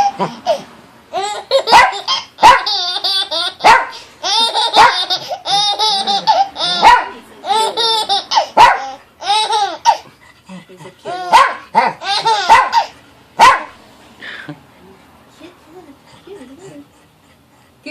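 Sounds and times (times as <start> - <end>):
baby laughing: 0.0 - 13.0
dog barking: 1.7 - 2.7, 3.6 - 4.0, 4.7 - 5.1, 6.7 - 7.2, 8.6 - 9.0, 11.3 - 13.8.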